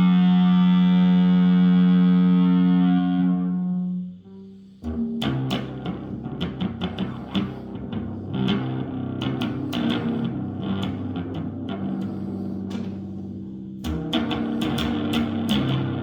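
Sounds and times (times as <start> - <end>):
sustained bass guitar note: 0.0 - 16.0
bass strings plucked and clicked: 4.8 - 16.0.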